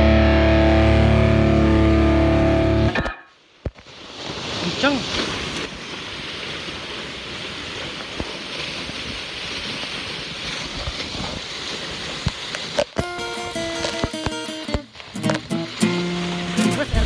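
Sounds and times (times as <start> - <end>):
guitar music: 0.0 - 3.2, 13.0 - 17.0
waterfall pouring: 3.8 - 17.0.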